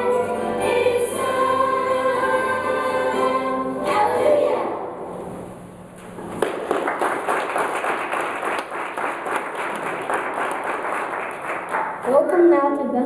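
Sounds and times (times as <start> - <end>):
audience applauding: 6.4 - 12.0.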